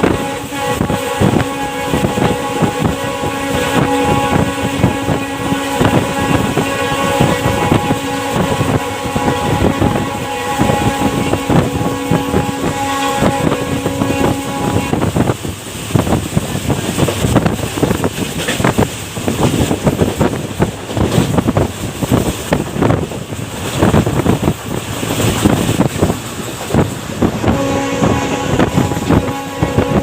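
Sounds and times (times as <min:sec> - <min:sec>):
locomotive horn chord: 0:00.0 - 0:15.9, 0:27.2 - 0:30.0
train clatter: 0:00.0 - 0:30.0
train rushing at full speed: 0:00.0 - 0:30.0.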